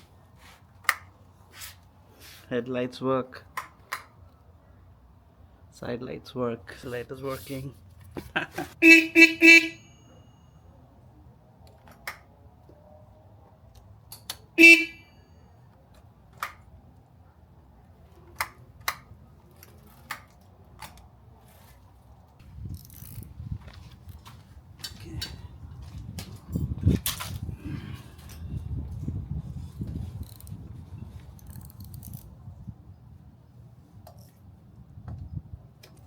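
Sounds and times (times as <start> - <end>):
motorcycle horn beep: 8.8 - 10.2, 14.6 - 15.2.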